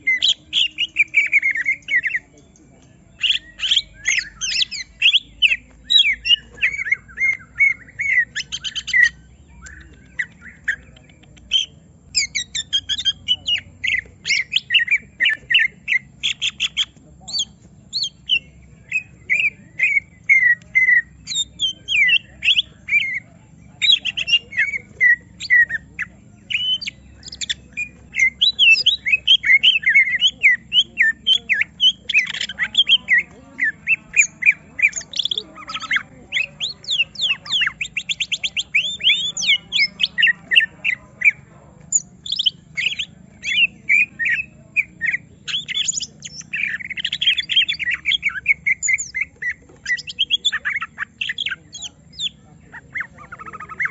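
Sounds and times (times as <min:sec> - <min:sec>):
bird whistling and squawking song: 0:00.0 - 0:53.9.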